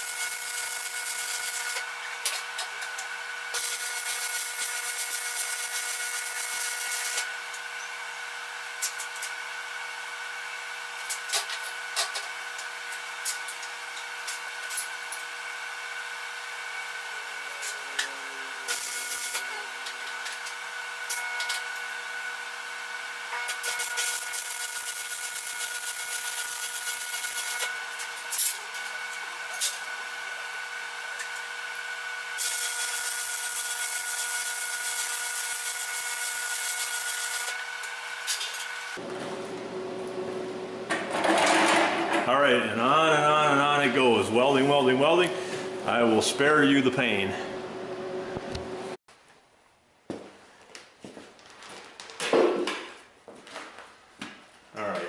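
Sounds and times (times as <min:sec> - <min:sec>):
arc welding hiss and crackle: 0:00.0 - 0:07.7, 0:08.7 - 0:09.4, 0:10.9 - 0:39.0
shop equipment hum: 0:00.0 - 0:55.0.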